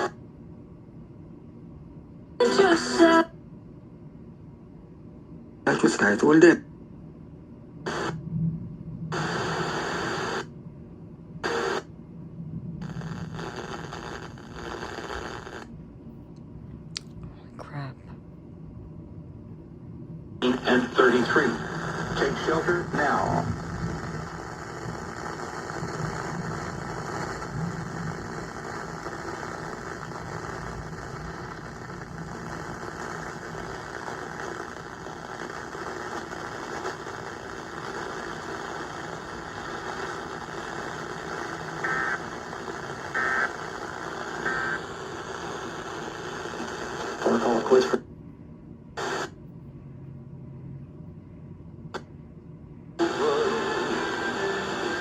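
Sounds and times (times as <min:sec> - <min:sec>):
radio hiss and static: 0:05.7 - 0:06.6, 0:07.9 - 0:08.2, 0:09.1 - 0:10.5, 0:11.4 - 0:11.9, 0:12.8 - 0:15.7, 0:20.4 - 0:48.1, 0:49.0 - 0:49.4, 0:53.0 - 0:55.0.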